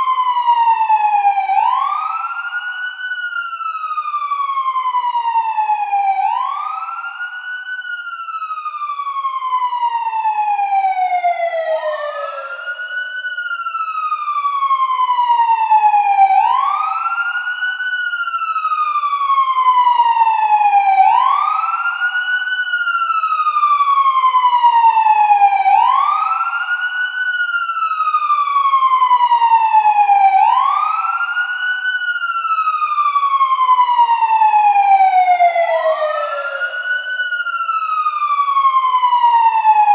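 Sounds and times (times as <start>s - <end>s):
police siren wailing: 0.0s - 39.9s
second fainter siren wail: 0.0s - 39.9s.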